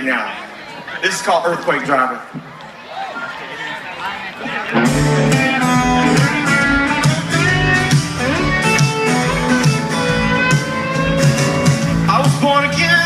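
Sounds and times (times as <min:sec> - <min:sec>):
strummed guitars: 0:04.7 - 0:13.0
steady drum beat: 0:04.8 - 0:13.0.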